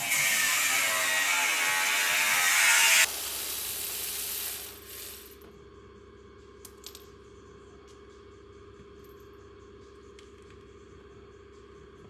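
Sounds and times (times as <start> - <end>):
power tool whirring: 0.0 - 5.3.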